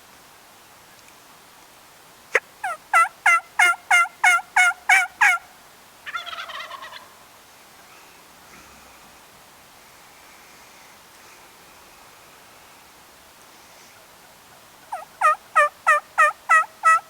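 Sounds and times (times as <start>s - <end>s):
turkey yelps: 2.3s - 5.4s, 6.1s - 7.1s, 14.8s - 17.0s
rattling turkey gobble: 2.6s - 5.4s, 6.0s - 7.1s, 14.8s - 17.0s.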